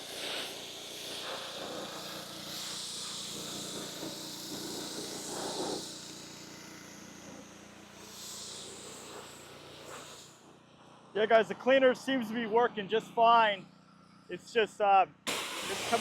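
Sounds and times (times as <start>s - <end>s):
pressure washer engine running: 0.0s - 16.0s
water spray hissing: 0.1s - 6.3s, 15.3s - 16.0s.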